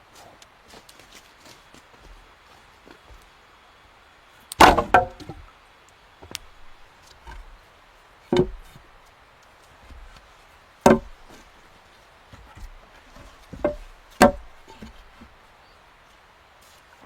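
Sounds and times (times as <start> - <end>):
axe chopping wood: 4.5 - 5.4, 6.2 - 7.5, 8.3 - 8.8, 10.8 - 11.5, 12.6 - 15.1.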